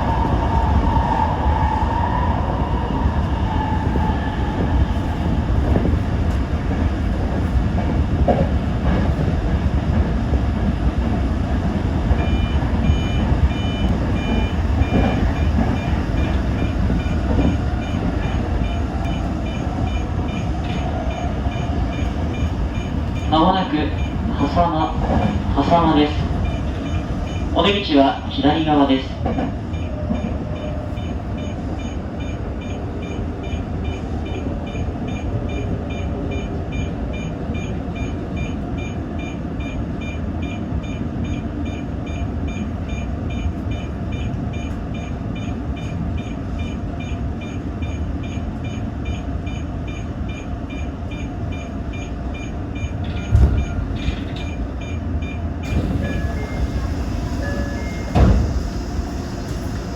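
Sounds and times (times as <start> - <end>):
electric train rumbling: 0.0 - 59.9.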